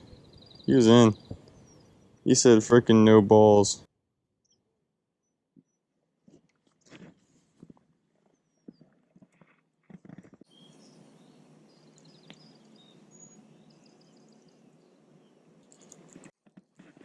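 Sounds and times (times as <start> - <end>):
small birds chirping: 0.0 - 3.3, 8.2 - 16.3
outdoor background hiss: 10.5 - 16.3.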